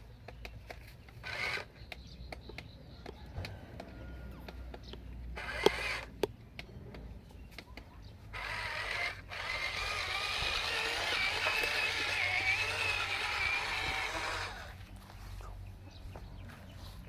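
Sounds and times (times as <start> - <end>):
toy electric motor whining: 0.7 - 2.0, 5.4 - 6.3, 8.3 - 14.8.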